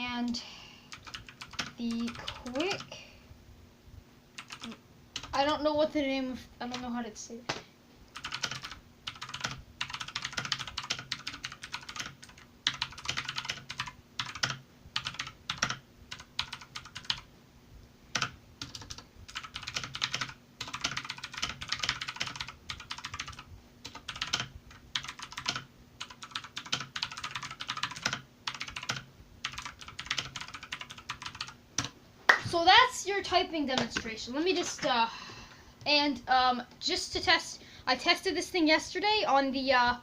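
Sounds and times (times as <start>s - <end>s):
mechanical keyboard typing: 0.9s - 2.9s, 4.4s - 5.4s, 8.1s - 17.2s, 18.1s - 31.9s.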